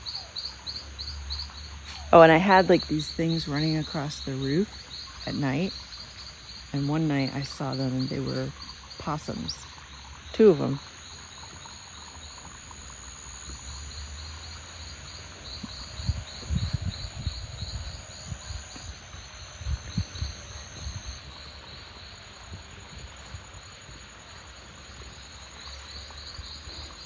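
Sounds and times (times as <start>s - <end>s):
background hiss: 0.0s - 27.0s
insects pulsing chirp: 0.0s - 27.0s
thin high continuous whine: 6.7s - 27.0s
low thumps and rumbles: 15.3s - 24.0s.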